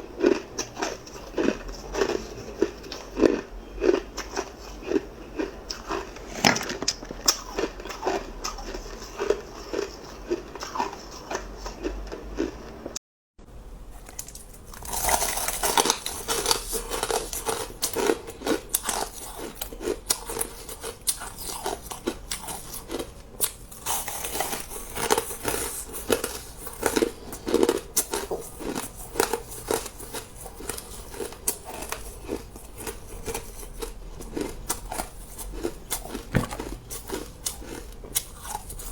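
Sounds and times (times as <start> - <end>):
ice being chewed: 0.0 - 12.9, 14.0 - 38.9.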